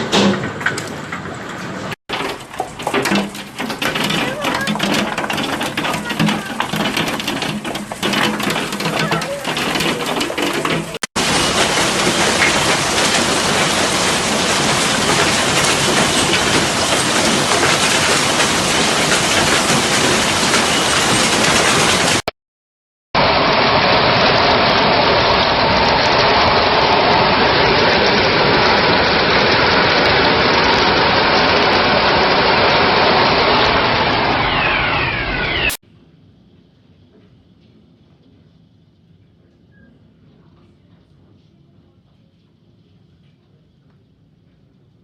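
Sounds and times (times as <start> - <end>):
hail and heavy rain pounding: 2.1 - 22.3, 23.2 - 34.4.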